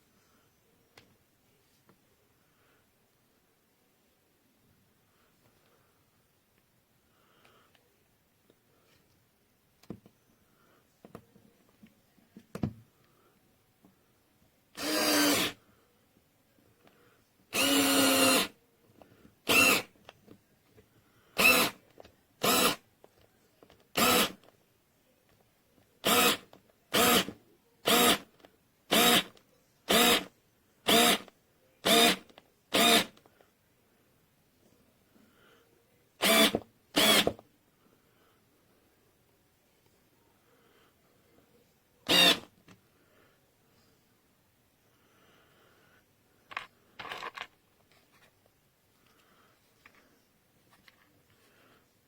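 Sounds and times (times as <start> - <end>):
electric screwdriver whirring: 14.8 - 15.6, 17.6 - 18.5, 19.5 - 19.9, 21.4 - 21.8, 22.4 - 22.8, 24.0 - 24.4, 26.0 - 26.4, 27.0 - 27.3, 27.9 - 28.2, 28.9 - 29.3, 29.9 - 30.3, 30.9 - 31.3, 31.9 - 33.2, 36.2 - 37.4, 42.1 - 42.5.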